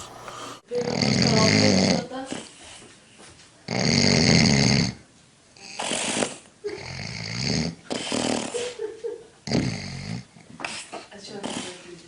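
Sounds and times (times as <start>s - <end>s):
breaths: 0.0s - 0.6s
loud rasping snoring: 0.0s - 2.1s, 3.7s - 5.0s, 5.6s - 8.5s, 9.5s - 11.9s.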